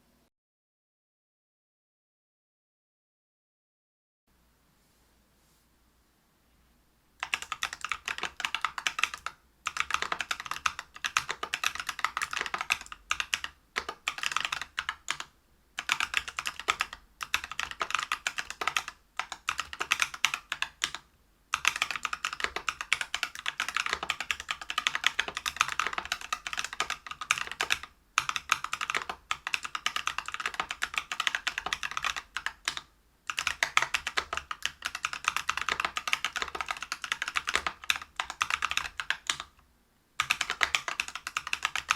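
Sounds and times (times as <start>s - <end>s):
fast mechanical keyboard typing: 7.2s - 39.5s, 40.2s - 41.9s.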